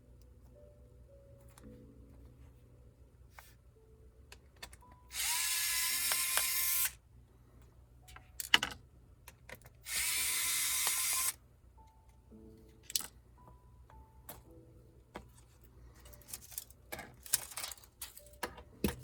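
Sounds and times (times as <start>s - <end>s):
electric screwdriver whining: 5.1s - 7.0s, 9.8s - 11.4s.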